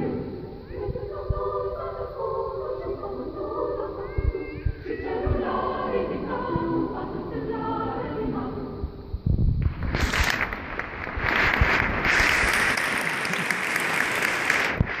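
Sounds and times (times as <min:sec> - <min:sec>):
choir singing chord: 0:00.0 - 0:04.1, 0:04.8 - 0:08.9
audience applause: 0:10.1 - 0:15.0.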